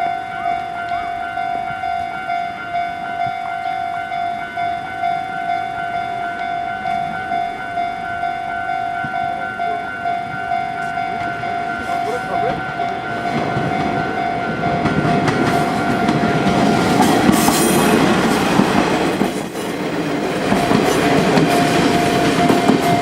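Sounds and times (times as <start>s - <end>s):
level crossing electronic bell: 0.0s - 16.4s.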